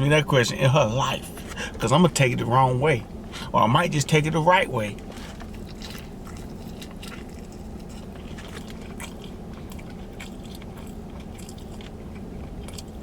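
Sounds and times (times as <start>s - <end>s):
person chewing crunchy food: 5.0s - 13.0s.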